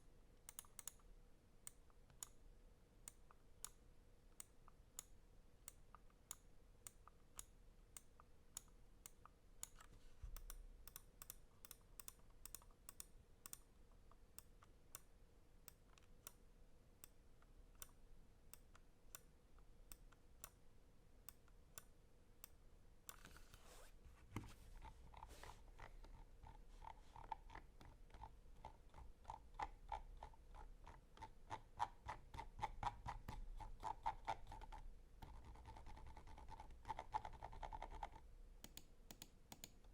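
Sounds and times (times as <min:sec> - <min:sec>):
scroll wheel ratcheting ticks: 0:05.7 - 0:13.7, 0:24.8 - 0:39.8
brief rub: 0:23.2 - 0:25.6.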